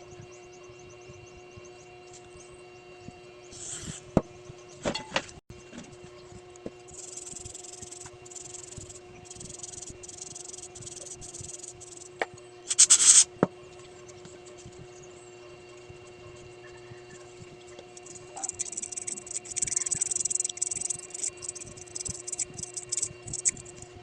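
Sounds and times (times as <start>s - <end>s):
sandpaper scraping metal: 6.9s - 12.1s, 12.7s - 13.3s, 18.0s - 23.8s.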